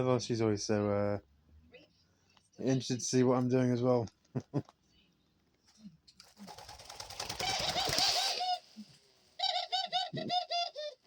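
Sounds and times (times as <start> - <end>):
rustling wing flutter: 6.2 - 9.0
doves calling: 6.6 - 8.8.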